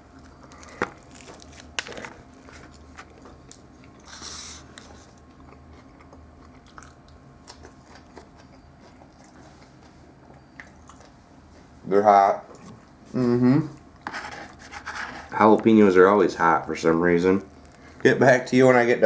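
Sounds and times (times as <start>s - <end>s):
person chewing crunchy sandwich: 0.0s - 11.8s, 17.3s - 18.0s.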